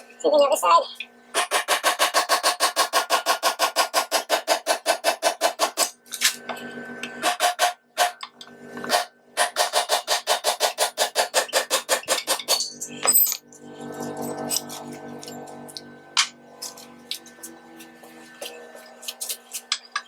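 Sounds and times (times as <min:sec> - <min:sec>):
steady multi-tone hum: 0:00.0 - 0:20.0
rapid metallic clicking of hand tool: 0:01.3 - 0:06.0, 0:07.2 - 0:08.2, 0:08.9 - 0:12.6.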